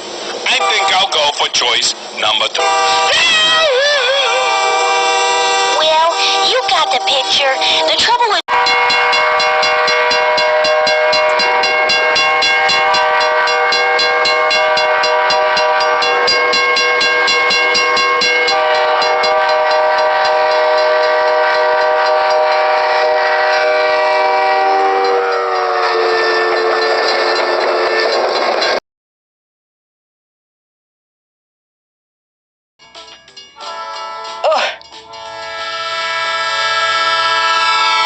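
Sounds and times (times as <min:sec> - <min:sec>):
train air horn chord: 0:00.5 - 0:01.2, 0:02.6 - 0:03.4, 0:04.2 - 0:28.2, 0:33.6 - 0:38.0.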